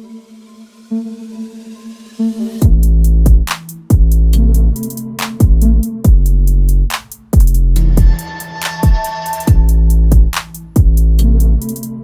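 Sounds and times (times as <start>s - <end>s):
electronic music with sub-bass beat: 2.6s - 12.0s.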